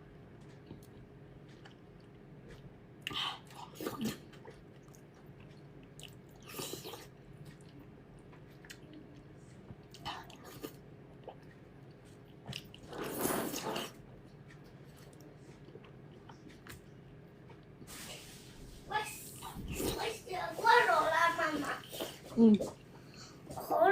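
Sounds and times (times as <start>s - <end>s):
person chewing food: 0.4s - 17.9s.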